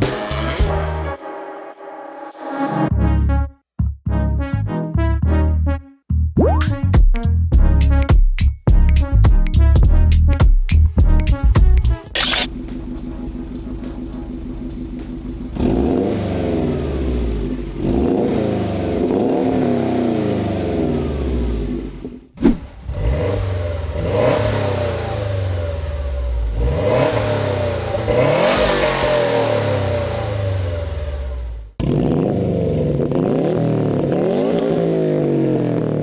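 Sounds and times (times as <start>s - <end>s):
car engine idling and revving: 11.8s - 36.0s.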